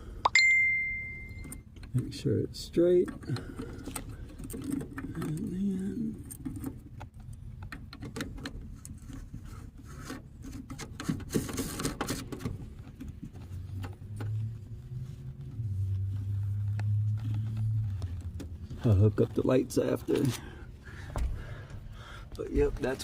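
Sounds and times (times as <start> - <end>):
small parts clicking and tapping: 3.0 - 9.3.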